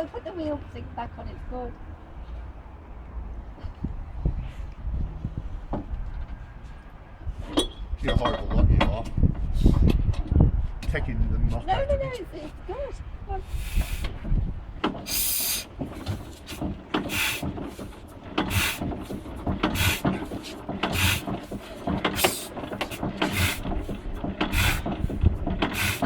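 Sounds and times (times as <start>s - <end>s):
low engine knocks: 0.0s - 26.0s
engine turned over by hand hissing: 13.4s - 26.0s.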